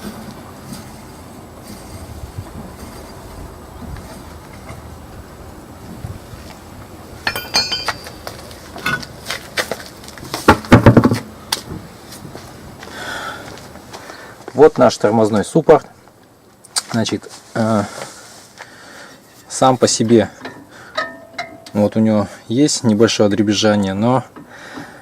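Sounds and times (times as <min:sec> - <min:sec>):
sharp metallic clinks: 0:07.2 - 0:09.0, 0:21.0 - 0:21.8
heavy thumps: 0:10.3 - 0:12.4
knocks: 0:10.5 - 0:11.8.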